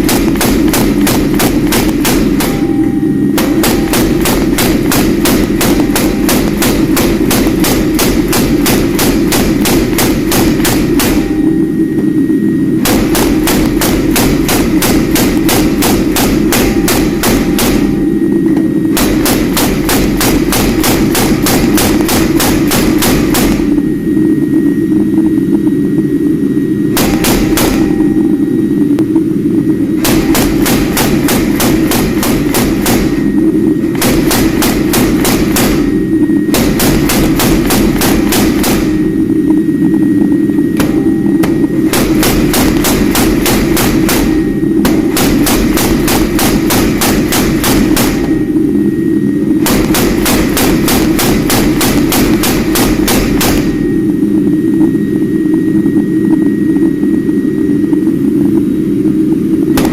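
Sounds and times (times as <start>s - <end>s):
hammer striking steel on anvil: 0.0s - 11.6s, 12.8s - 18.1s, 27.0s - 28.1s, 40.8s - 48.4s
steady low hum: 0.0s - 59.9s.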